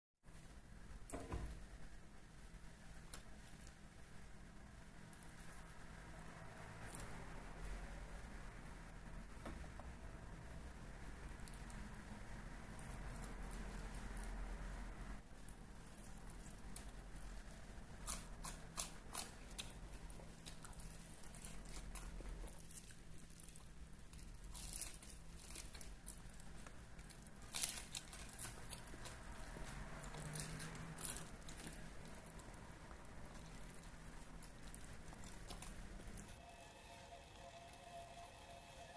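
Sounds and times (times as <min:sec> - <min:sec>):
faint low hum: 0:00.3 - 0:38.9
person chewing crunchy food: 0:18.0 - 0:32.6.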